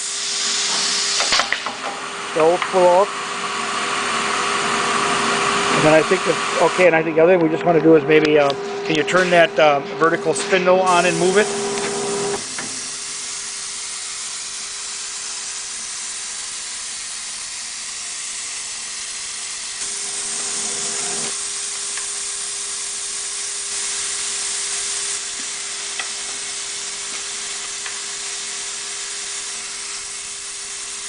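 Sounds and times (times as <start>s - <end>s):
boring spindle whining: 0.0s - 16.6s.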